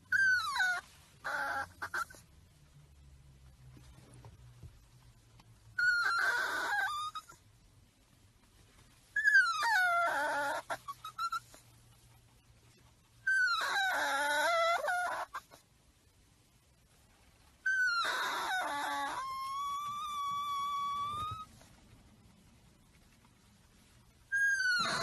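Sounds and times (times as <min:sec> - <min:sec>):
puppy calling: 0:00.0 - 0:02.2, 0:05.8 - 0:07.4, 0:09.1 - 0:12.1, 0:13.2 - 0:15.6, 0:17.6 - 0:21.8, 0:24.2 - 0:25.0.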